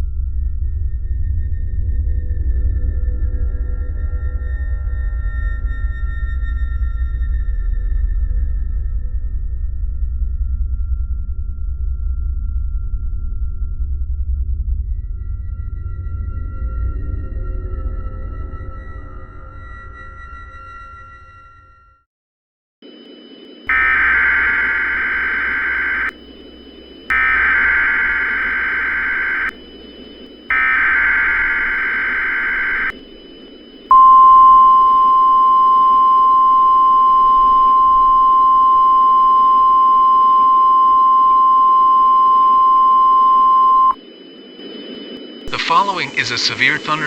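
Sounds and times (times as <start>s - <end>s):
steady alarm tone: 22.9s - 45.6s
radio static hiss: 23.7s - 35.6s, 45.5s - 47.0s
warbling digital data tones: 23.7s - 44.0s.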